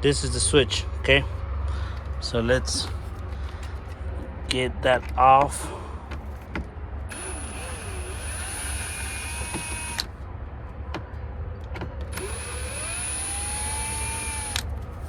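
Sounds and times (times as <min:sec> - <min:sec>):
low steady hum: 0:00.0 - 0:15.0
cordless drill whining: 0:07.1 - 0:10.1, 0:12.1 - 0:14.7.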